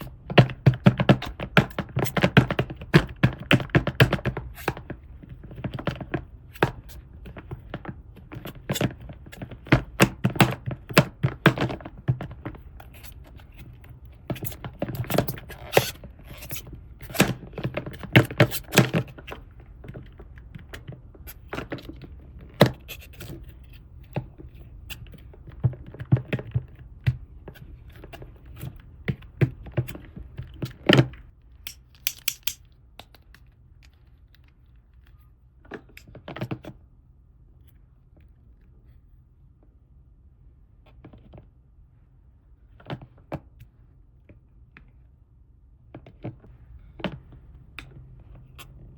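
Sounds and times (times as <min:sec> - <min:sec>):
plastic toy pieces clicking: 0:31.7 - 0:32.6.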